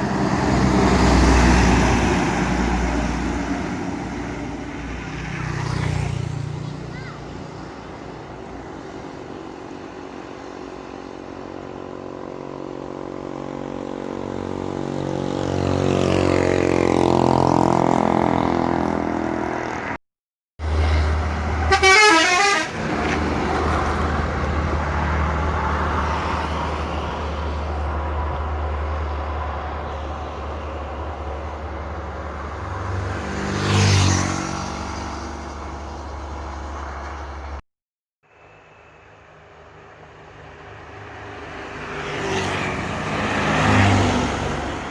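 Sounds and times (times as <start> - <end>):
bus diesel engines labouring: 0.0 - 5.5, 6.2 - 15.9, 20.6 - 33.2, 42.6 - 44.9
vehicle passing: 0.0 - 9.1, 31.2 - 37.6, 40.9 - 44.9
musical bus horn: 21.6 - 22.9.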